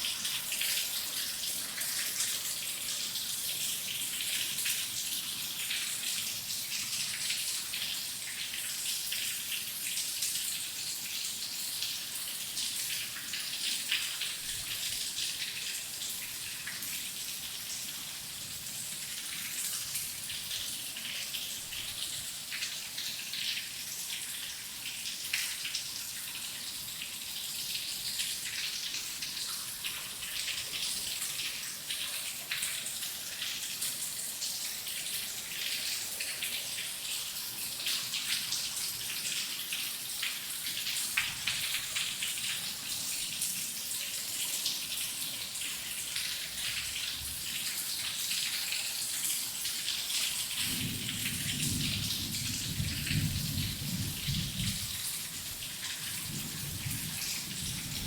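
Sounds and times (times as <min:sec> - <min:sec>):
heavy rain falling: 0:50.4 - 0:58.0.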